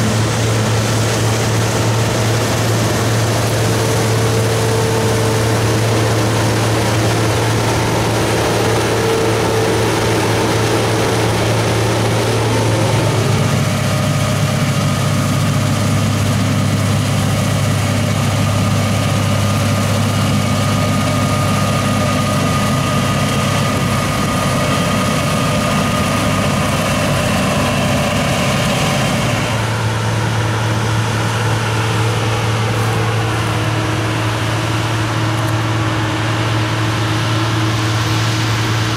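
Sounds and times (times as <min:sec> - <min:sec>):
machinery whining tones: 0:00.0 - 0:37.7
combine harvester engine droning: 0:00.0 - 0:38.9.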